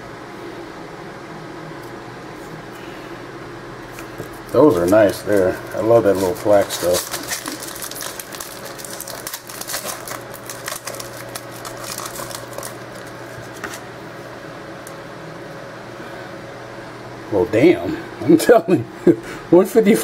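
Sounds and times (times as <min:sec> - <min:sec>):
steady low hum: 0:00.0 - 0:20.0
cards and packaging rustling: 0:04.0 - 0:13.8.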